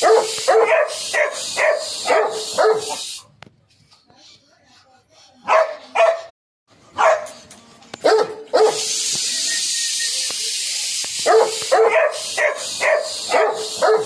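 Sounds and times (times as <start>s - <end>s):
puppy barking: 0.0s - 3.0s, 5.4s - 6.3s, 6.9s - 7.4s, 8.0s - 8.9s, 11.2s - 14.0s
steady hiss: 0.1s - 3.3s, 8.7s - 14.0s.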